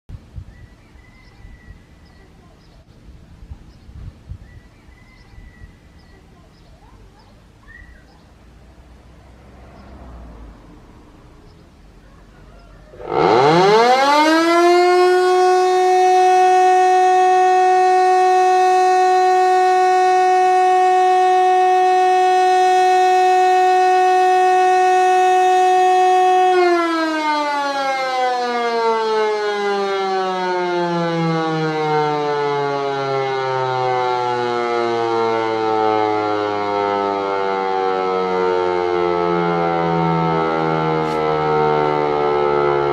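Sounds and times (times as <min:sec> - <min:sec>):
fire siren winding up and down: 0:12.9 - 0:42.9.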